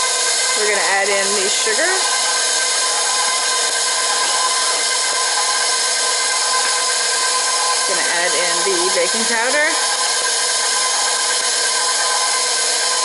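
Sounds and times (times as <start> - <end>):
stand mixer motor whine: 0.0 - 13.0.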